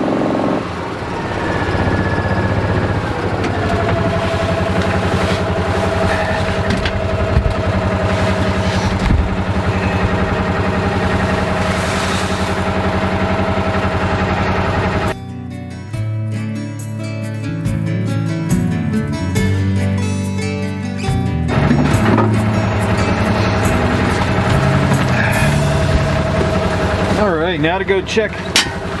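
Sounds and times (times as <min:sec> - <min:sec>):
vehicle engine idling: 0:00.0 - 0:15.2, 0:21.1 - 0:29.0.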